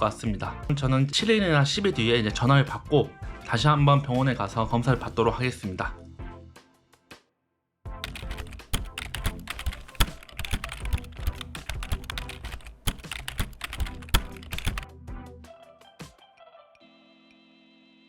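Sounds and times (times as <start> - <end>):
rapid irregular clicking: 8.0 - 14.8
background music: 8.0 - 18.0.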